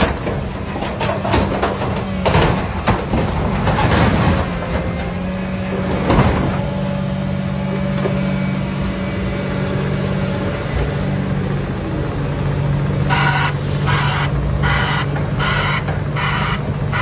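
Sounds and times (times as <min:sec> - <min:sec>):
metal clanks: 0:00.0 - 0:07.1
diesel engine running under load: 0:00.0 - 0:17.0.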